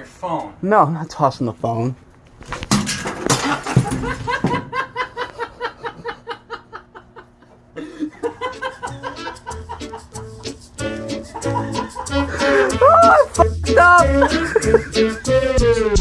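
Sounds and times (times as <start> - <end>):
man laughing hard: 3.4 - 10.2, 10.8 - 15.6
music: 8.2 - 16.0.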